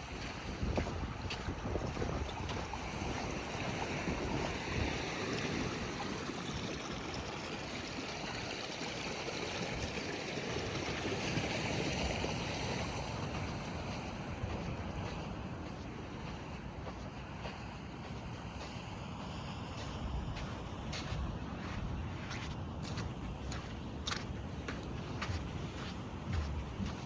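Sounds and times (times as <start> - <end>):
wind buffeting microphone: 0.0 - 7.7, 19.7 - 27.0.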